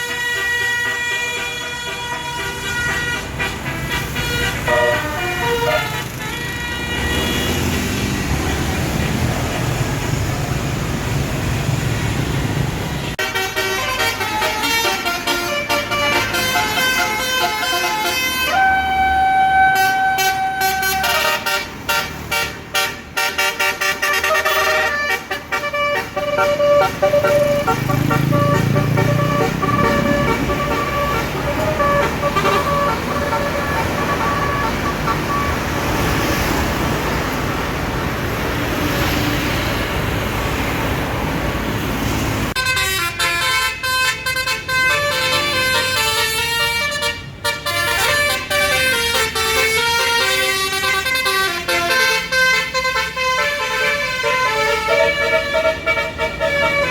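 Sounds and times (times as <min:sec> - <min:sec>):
bus horn playing a melody: 0:00.0 - 0:07.9, 0:13.1 - 0:35.8, 0:42.6 - 0:56.9
engine and road noise: 0:00.0 - 0:56.9.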